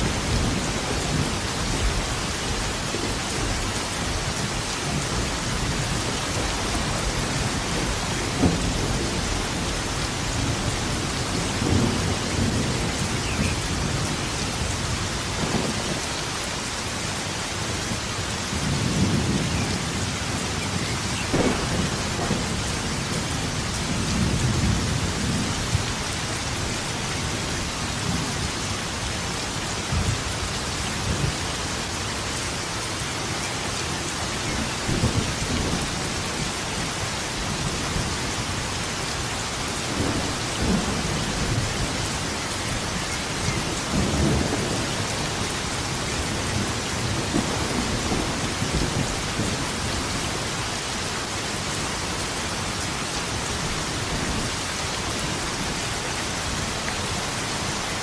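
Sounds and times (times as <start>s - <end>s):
thunder rumbling: 0.0s - 16.3s, 18.5s - 31.4s, 39.8s - 50.6s
heavy rain hissing: 0.0s - 58.0s
thunder crack: 7.6s - 9.1s, 21.3s - 23.0s.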